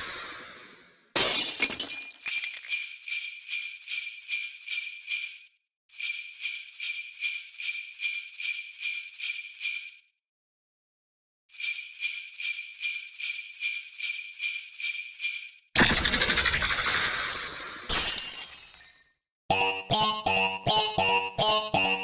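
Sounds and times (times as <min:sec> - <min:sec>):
sleigh bells shaken: 0:01.7 - 0:10.1, 0:11.5 - 0:18.9.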